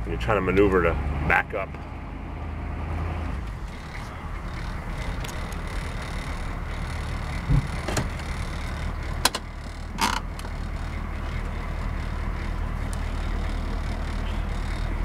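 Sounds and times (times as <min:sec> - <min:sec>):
diesel engine idling: 0:00.0 - 0:15.0
sharp clicks: 0:03.7 - 0:15.0
low thump: 0:07.4 - 0:08.1.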